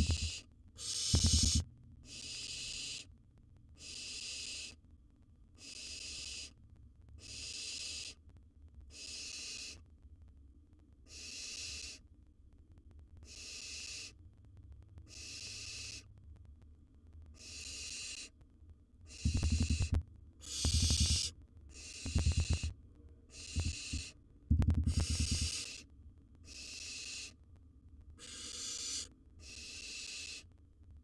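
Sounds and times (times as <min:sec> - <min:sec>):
owl nestlings hissing calls: 0:00.0 - 0:03.1, 0:03.8 - 0:04.8, 0:05.6 - 0:06.6, 0:07.2 - 0:08.2, 0:08.9 - 0:09.8, 0:11.1 - 0:12.0, 0:13.2 - 0:14.2, 0:15.1 - 0:16.1, 0:17.4 - 0:18.4, 0:19.1 - 0:22.7, 0:23.3 - 0:24.2, 0:24.9 - 0:27.4, 0:28.2 - 0:30.5.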